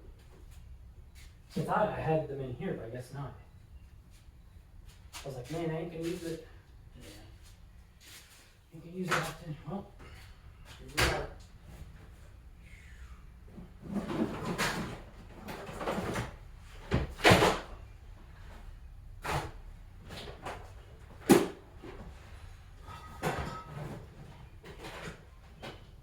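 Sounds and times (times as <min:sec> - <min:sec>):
rummaging through parts: 0:19.2 - 0:26.0
tools knocking and clattering: 0:22.8 - 0:26.0.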